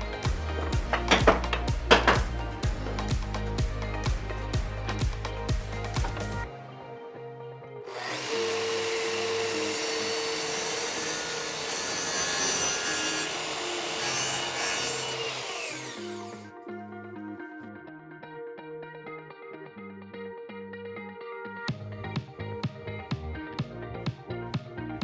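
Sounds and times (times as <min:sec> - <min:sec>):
background music: 0:00.0 - 0:25.0
power tool cutting wood: 0:07.9 - 0:16.5.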